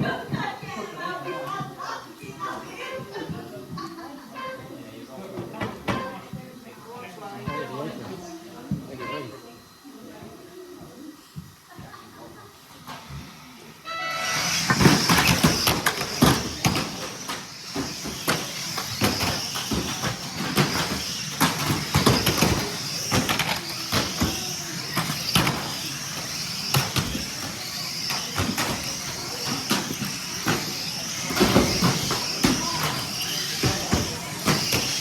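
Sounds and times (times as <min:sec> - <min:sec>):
radio-controlled cars whining: 0:07.2 - 0:35.0.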